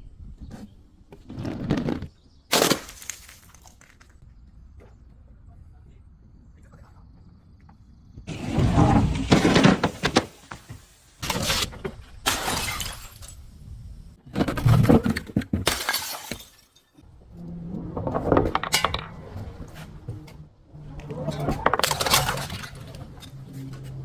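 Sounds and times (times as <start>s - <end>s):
glass bottles crushing and shattering: 12.3s - 13.4s, 14.7s - 17.0s.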